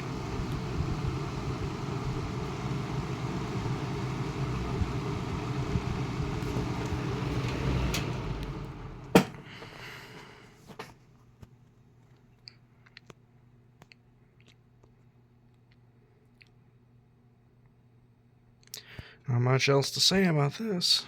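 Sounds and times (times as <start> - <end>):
box fan motor hum: 0.0 - 10.8.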